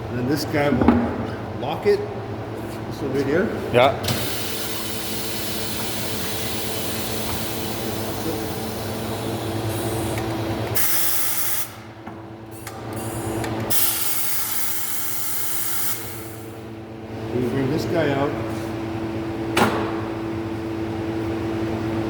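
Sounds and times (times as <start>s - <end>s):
mechanical hum: 0.0s - 22.0s
compressed air hissing: 4.1s - 11.8s.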